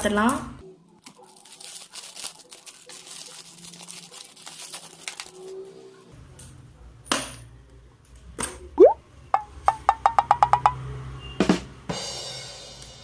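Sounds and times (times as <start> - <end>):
packaging rustling: 1.0 - 5.6.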